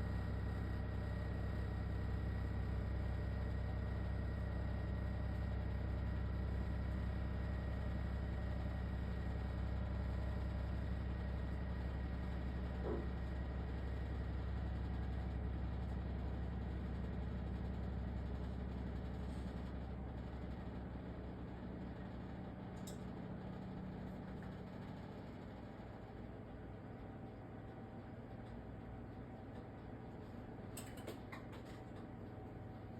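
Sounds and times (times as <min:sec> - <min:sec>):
machine running with low drone: 0:00.0 - 0:26.4.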